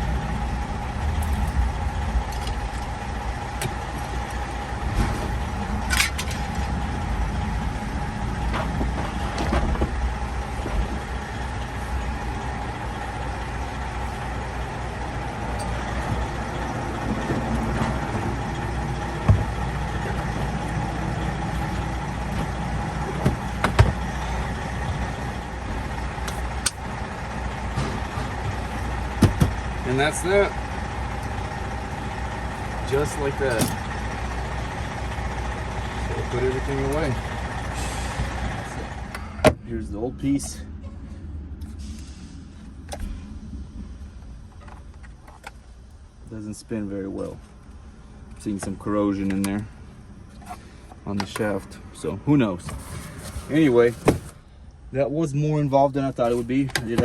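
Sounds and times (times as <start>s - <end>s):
diesel truck idling: 0.0s - 57.0s
clicks and knocks of parts: 3.6s - 6.8s.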